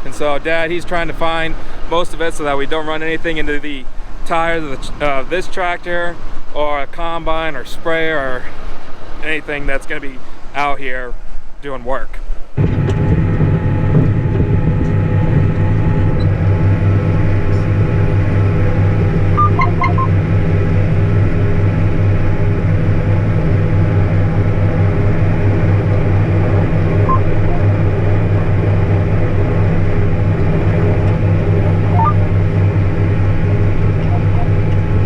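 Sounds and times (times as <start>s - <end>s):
tractor diesel engine drone: 0.0s - 35.0s
faint brief tones: 19.4s - 20.1s.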